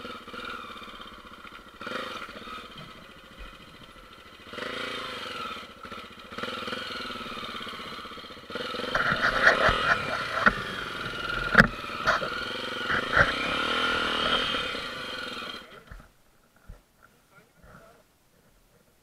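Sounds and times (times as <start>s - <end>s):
motorcycle engine revving: 0.0s - 16.8s
sharp knocks and clatters: 8.8s - 13.4s.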